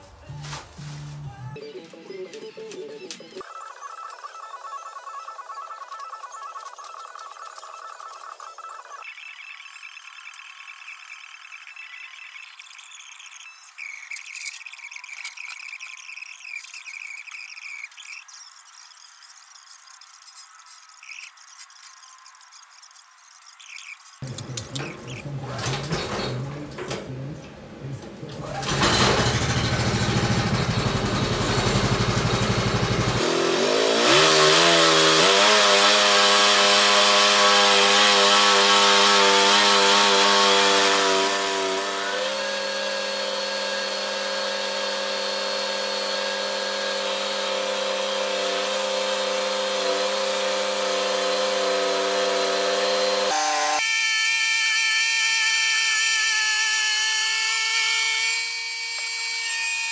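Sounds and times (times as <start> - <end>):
sawmill motor running: 24.2 - 54.2.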